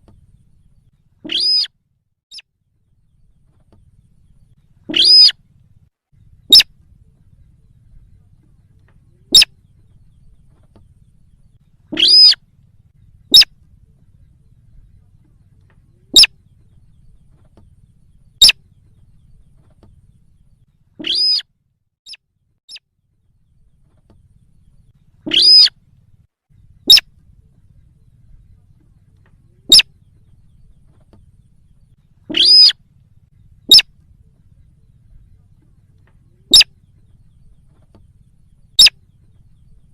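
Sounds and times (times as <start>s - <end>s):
bird call: 0.0s - 1.7s, 3.2s - 5.4s, 6.4s - 7.4s, 8.5s - 11.2s, 11.8s - 12.5s, 13.3s - 13.6s, 15.2s - 21.5s, 23.8s - 25.8s, 26.8s - 27.2s, 28.0s - 32.8s, 33.5s - 34.0s, 34.8s - 39.9s
faint low hum: 0.0s - 39.9s
high-pitched bird lure calls: 1.2s - 1.7s, 4.9s - 5.4s, 11.9s - 12.4s, 21.0s - 21.4s, 25.3s - 25.7s, 32.3s - 32.8s, 33.7s - 33.9s, 38.8s - 39.0s.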